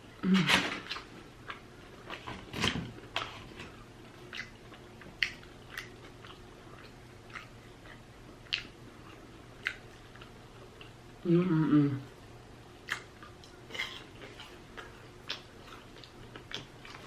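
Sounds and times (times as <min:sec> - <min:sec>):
person chewing with lip-smacking: 0:03.2 - 0:11.2, 0:12.8 - 0:17.0.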